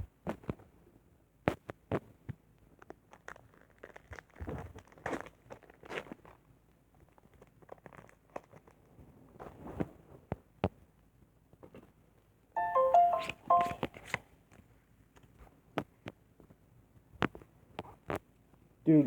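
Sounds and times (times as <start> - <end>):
electronic notification jingle: 12.6 - 13.9.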